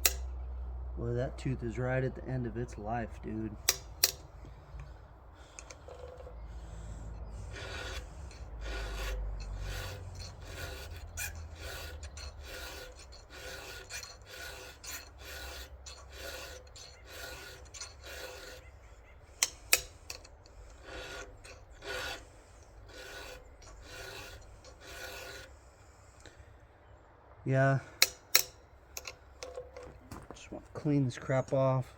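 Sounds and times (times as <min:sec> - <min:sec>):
file rasping on chainsaw chain: 0:00.0 - 0:00.3, 0:01.2 - 0:26.4, 0:27.9 - 0:30.0.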